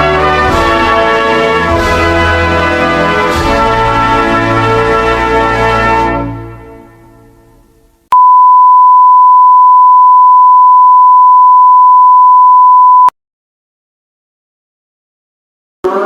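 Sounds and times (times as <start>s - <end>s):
steady electronic test tone: 8.2s - 13.1s.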